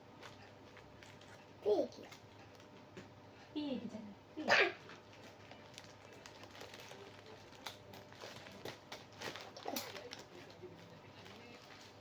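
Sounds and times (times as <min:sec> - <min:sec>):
hands handling packaging: 0:04.9 - 0:12.0.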